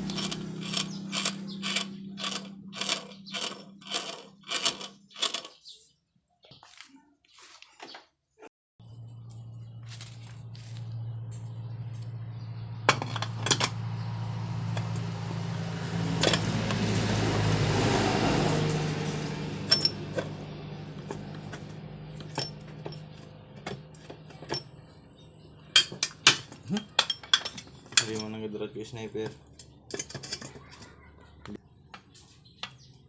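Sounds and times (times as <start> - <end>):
metal parts clinking: 0.1 - 5.6, 19.7 - 20.0, 22.2 - 23.0, 25.8 - 28.4, 29.6 - 30.8.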